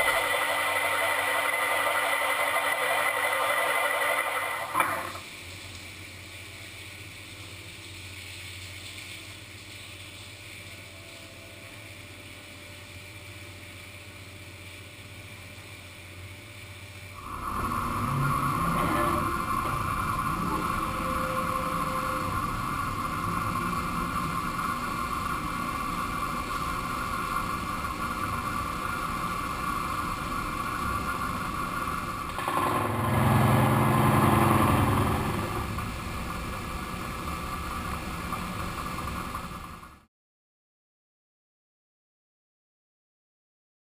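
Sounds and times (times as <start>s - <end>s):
high cutting whine: 0.0s - 5.2s, 17.1s - 39.5s
machine hum: 0.0s - 5.3s, 10.5s - 40.1s.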